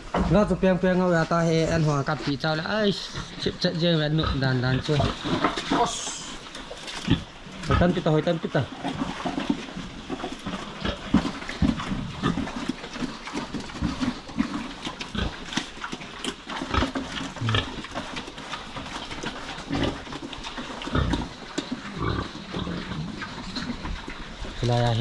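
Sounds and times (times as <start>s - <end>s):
pigs grunting: 0.0s - 25.0s.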